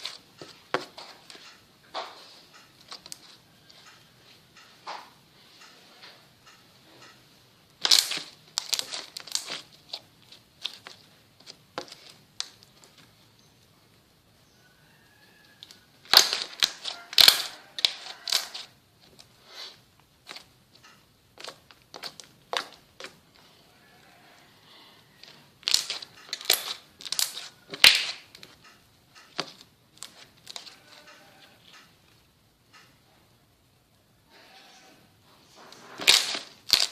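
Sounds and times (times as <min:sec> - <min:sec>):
slime squished by hand: 0:07.8 - 0:10.0
slime crackling and popping: 0:07.8 - 0:13.0, 0:15.6 - 0:19.3, 0:25.3 - 0:28.6, 0:36.0 - 0:36.9.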